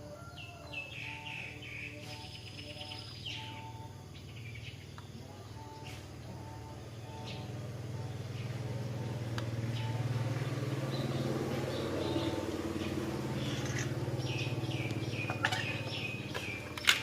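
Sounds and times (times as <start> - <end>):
birds chirping: 0.2 - 17.0.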